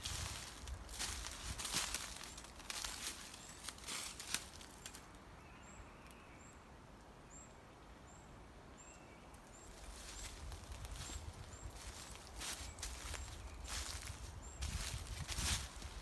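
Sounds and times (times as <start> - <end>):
footsteps on forest floor: 0.0 - 5.0, 9.7 - 16.0.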